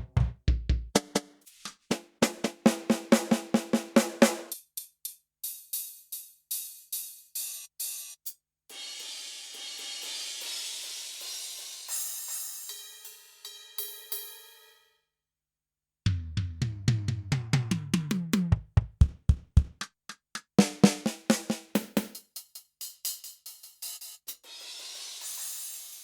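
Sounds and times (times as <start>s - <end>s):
snare and hi-hat strokes: 0.9s - 14.3s, 16.1s - 26.0s.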